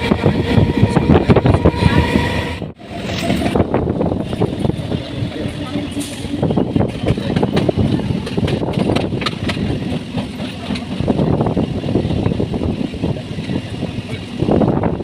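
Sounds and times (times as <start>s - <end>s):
electric train rumbling: 0.0s - 15.0s
wheels clacking and rattling: 3.2s - 15.0s.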